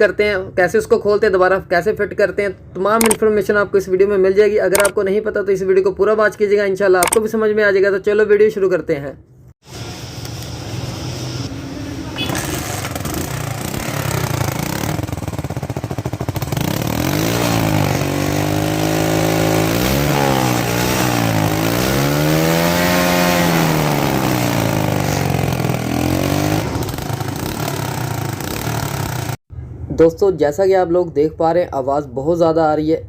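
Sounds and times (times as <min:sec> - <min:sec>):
motorcycle engine revving: 0:10.5 - 0:29.4.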